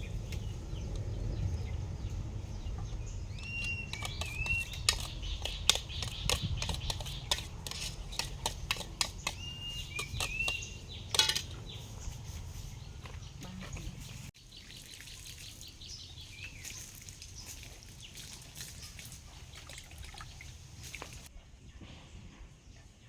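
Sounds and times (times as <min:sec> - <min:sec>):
low outdoor background noise: 0:00.0 - 0:23.0
utensils and dishes clicking: 0:03.5 - 0:11.6.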